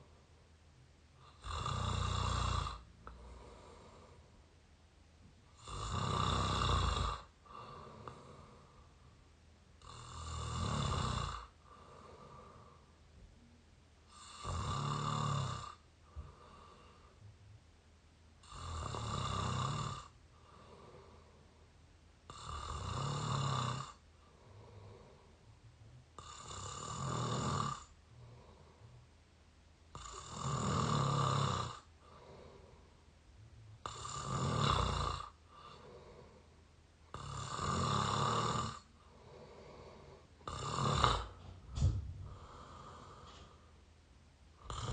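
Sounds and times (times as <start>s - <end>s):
person snoring: 1.2s - 4.2s, 5.5s - 8.9s, 9.8s - 12.9s, 14.1s - 17.3s, 18.4s - 21.4s, 22.3s - 25.4s, 26.2s - 29.0s, 29.9s - 32.9s, 33.8s - 36.5s, 37.1s - 43.7s, 44.6s - 44.9s
soft breathing: 2.7s - 4.6s, 7.2s - 10.1s, 11.4s - 13.5s, 15.7s - 17.6s, 20.3s - 21.9s, 24.0s - 26.0s, 27.8s - 29.2s, 31.8s - 33.1s, 35.4s - 37.2s, 38.8s - 44.0s.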